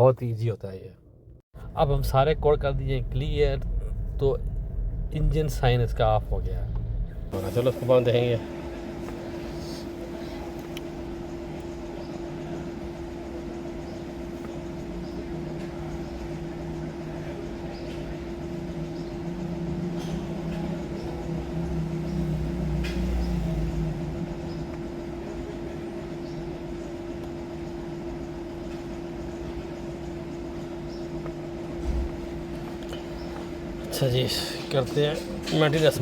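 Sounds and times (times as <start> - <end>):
car running with hum: 1.0 - 36.0.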